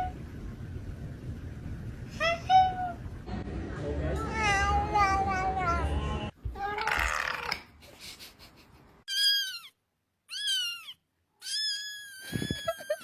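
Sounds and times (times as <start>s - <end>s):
cat meowing: 10.3s - 13.0s.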